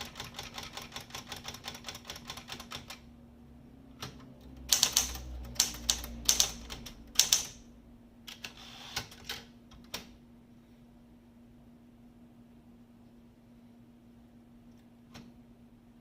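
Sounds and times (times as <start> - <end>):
typewriter key strikes: 4.0 - 7.6.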